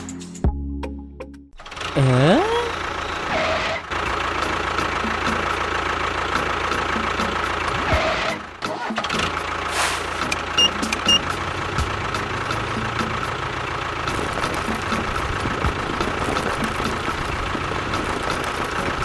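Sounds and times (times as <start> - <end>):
short high beeps: 10.6 - 11.3.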